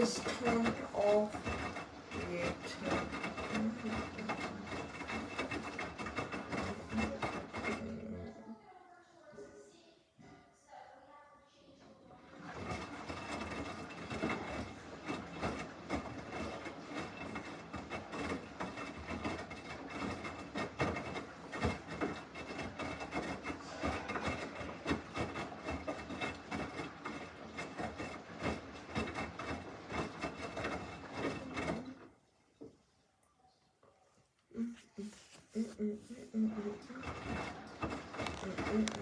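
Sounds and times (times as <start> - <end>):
washing machine drum turning: 0.0 - 8.3, 12.2 - 32.1, 36.4 - 39.0.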